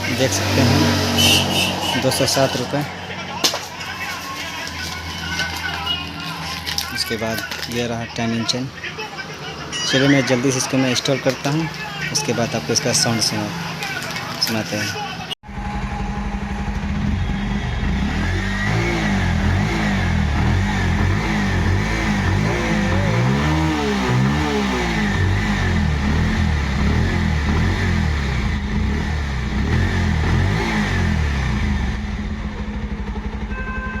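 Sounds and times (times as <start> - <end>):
motorcycle engine revving: 0.0 - 3.6, 15.4 - 34.0.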